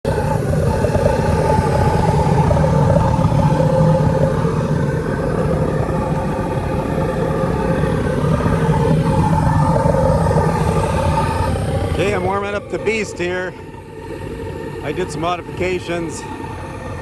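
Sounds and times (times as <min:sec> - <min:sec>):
jet engine running: 0:00.0 - 0:17.0.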